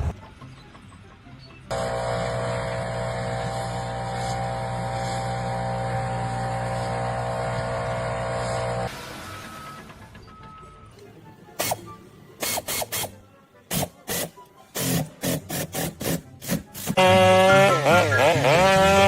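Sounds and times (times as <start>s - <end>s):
machine motor humming: 1.7s - 8.9s.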